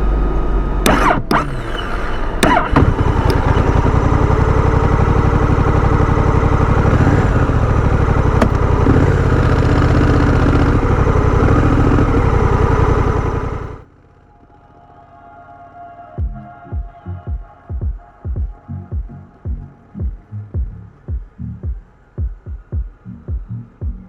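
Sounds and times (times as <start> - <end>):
motorcycle engine idling: 0.9 - 14.5.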